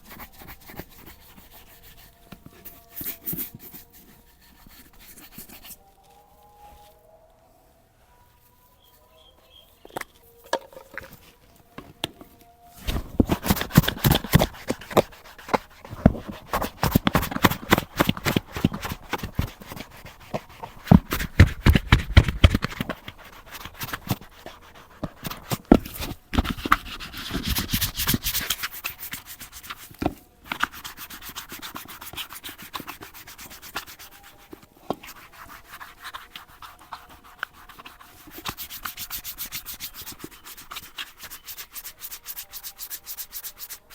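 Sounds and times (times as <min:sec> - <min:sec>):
scrubbing strokes on leather boot: 0:12.8 - 0:43.9.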